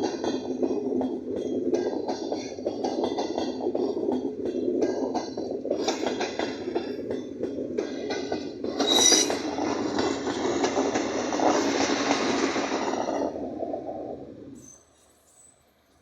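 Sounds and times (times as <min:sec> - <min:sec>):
train rumbling on rails: 0:00.0 - 0:14.8
high metallic squeal: 0:08.8 - 0:09.7.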